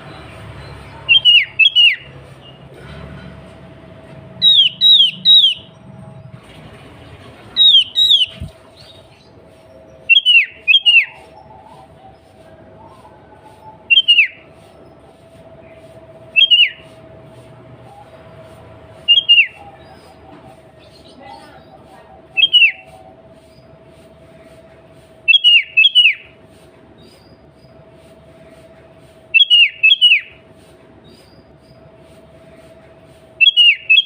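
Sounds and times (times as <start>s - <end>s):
bird whistled calls: 0.9s - 2.6s, 4.4s - 5.8s, 7.6s - 9.1s, 9.7s - 14.8s, 16.3s - 17.1s, 19.0s - 23.6s, 25.2s - 26.4s, 29.3s - 30.4s, 33.4s - 34.0s.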